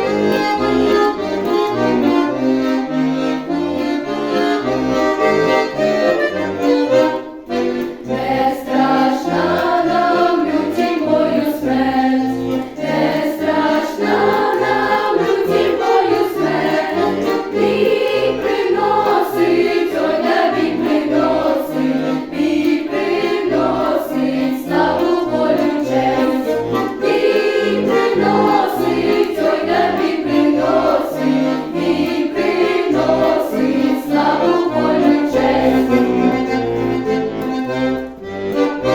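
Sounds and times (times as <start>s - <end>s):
accordion accompaniment: 0.0s - 38.9s
choir singing in unison: 8.0s - 36.5s.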